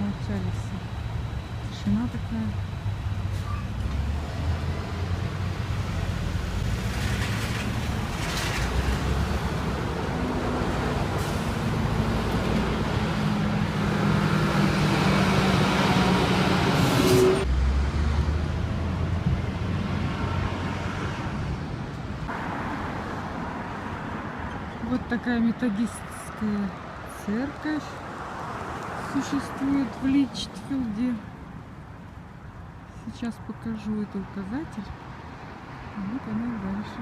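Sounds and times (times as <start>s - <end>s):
heavy vehicle engine running: 0.0s - 23.1s
traffic rumble: 0.0s - 37.0s.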